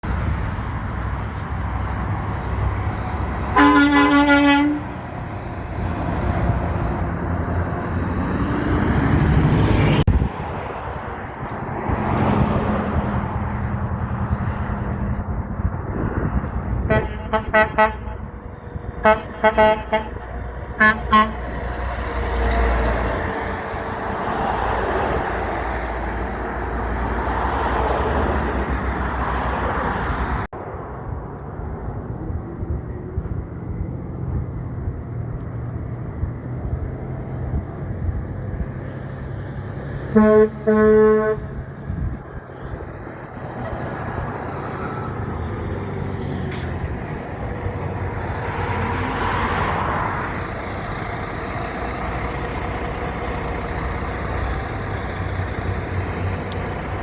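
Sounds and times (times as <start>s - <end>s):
diesel engines and road noise: 0.0s - 57.0s
truck horns: 1.5s - 8.4s, 13.3s - 30.4s, 36.2s - 57.0s.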